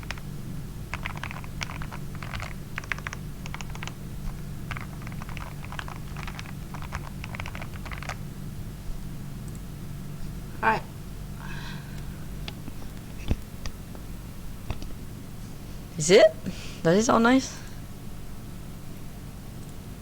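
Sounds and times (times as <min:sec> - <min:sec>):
mechanical keyboard typing: 0:00.0 - 0:00.3, 0:00.9 - 0:08.2.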